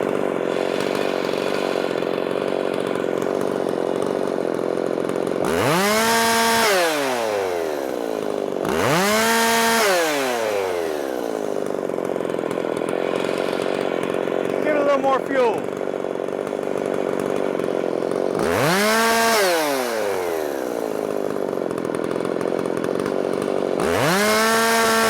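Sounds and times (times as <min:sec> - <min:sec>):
chainsaw idling and revving: 0:00.0 - 0:25.0.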